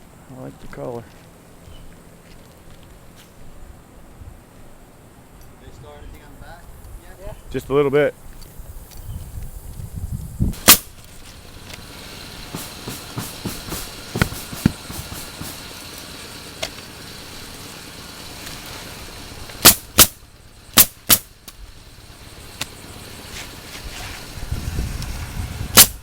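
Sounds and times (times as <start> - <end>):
nail guns firing: 10.6 - 11.0, 12.4 - 15.8, 19.6 - 21.3.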